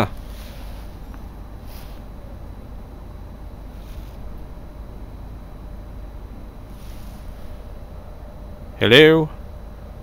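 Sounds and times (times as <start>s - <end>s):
low outdoor rumble: 0.0s - 10.0s
soft hiss: 6.6s - 7.8s.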